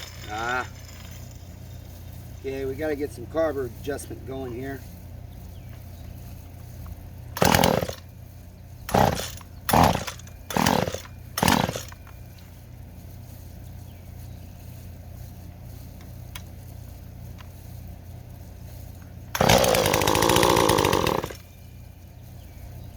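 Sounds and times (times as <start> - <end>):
chainsaw idling and revving: 7.4 - 8.1, 8.9 - 12.1, 19.3 - 21.5.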